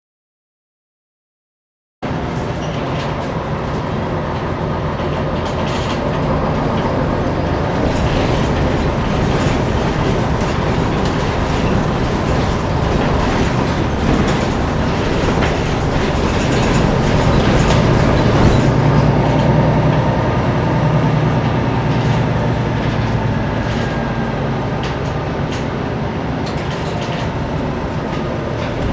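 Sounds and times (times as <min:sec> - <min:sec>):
diesel engine droning: 0:02.0 - 0:28.9
road rumble: 0:02.0 - 0:28.9
cabin rattles: 0:05.4 - 0:19.6.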